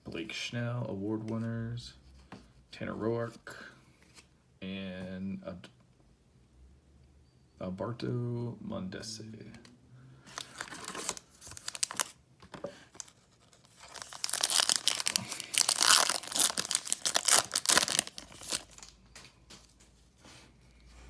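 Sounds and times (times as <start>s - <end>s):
foil wrapper tearing and crinkling: 10.4s - 12.2s, 13.0s - 19.0s.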